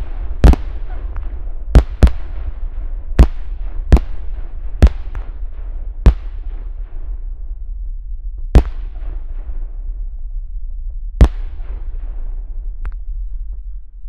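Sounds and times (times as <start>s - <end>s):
small firework crack: 0.0s - 2.5s
firework bangs: 0.0s - 6.9s
steady low rumble: 0.0s - 14.0s.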